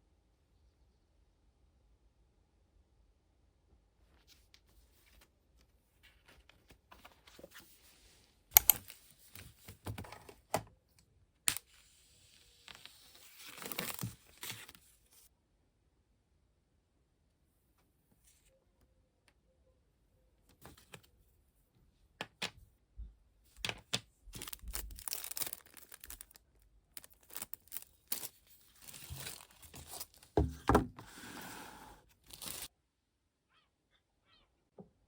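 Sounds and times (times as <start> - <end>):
paper or plastic rustling: 24.4 - 26.4, 27.0 - 30.6, 32.1 - 32.7.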